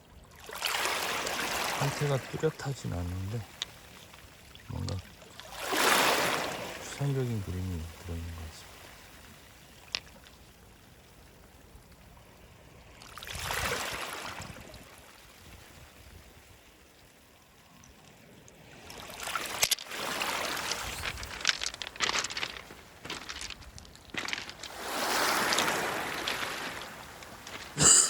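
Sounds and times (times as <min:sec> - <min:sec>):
waves washing over pebble beach: 0:00.5 - 0:04.5, 0:05.2 - 0:11.0, 0:13.0 - 0:15.8, 0:18.7 - 0:27.9
pebbles clicking: 0:19.4 - 0:27.8.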